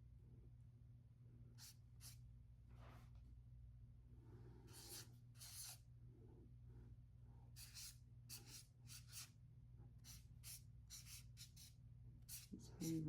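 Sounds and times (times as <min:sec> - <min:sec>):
low steady hum: 0:00.0 - 0:13.0
pen scratching on paper: 0:04.7 - 0:05.8, 0:07.6 - 0:09.3, 0:10.0 - 0:11.7, 0:12.3 - 0:13.0.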